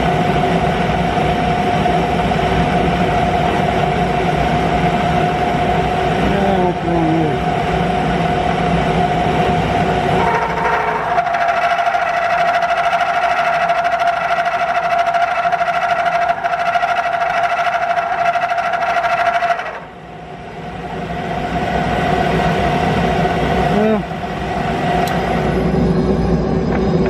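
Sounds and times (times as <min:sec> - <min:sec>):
end mill cutting metal: 0:00.0 - 0:20.1
high-pitched ringing whine: 0:00.0 - 0:27.0.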